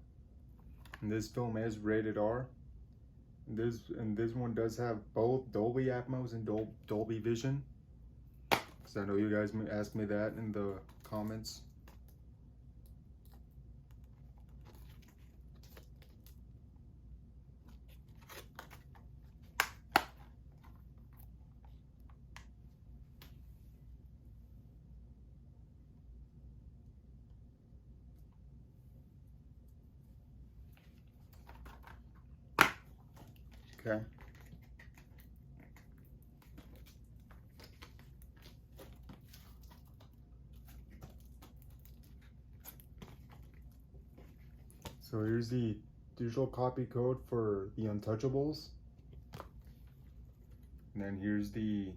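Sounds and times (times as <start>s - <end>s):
low room hum: 0.0s - 51.9s
plastic crinkling and rustling: 33.0s - 45.1s.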